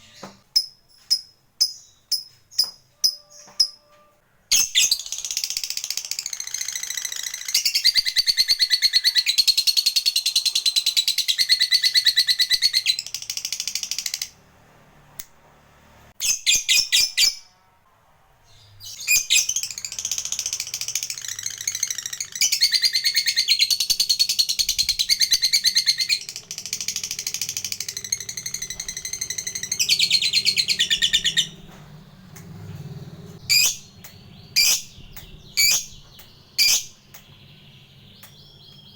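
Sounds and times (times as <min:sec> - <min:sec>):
lovebird chattering trill: 0:04.6 - 0:14.3, 0:19.0 - 0:31.8, 0:33.4 - 0:37.2.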